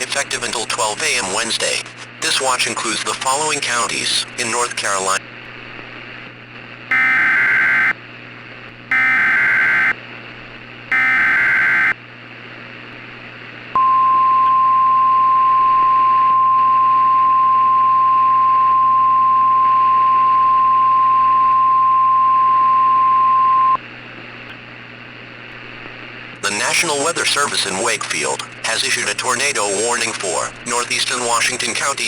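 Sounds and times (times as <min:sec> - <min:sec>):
radio hiss: 0:00.0 - 0:05.3, 0:26.0 - 0:32.0
steady warning alarm tone: 0:06.9 - 0:08.0, 0:08.9 - 0:10.0, 0:10.9 - 0:12.0
screeching digital data bursts: 0:08.9 - 0:09.9.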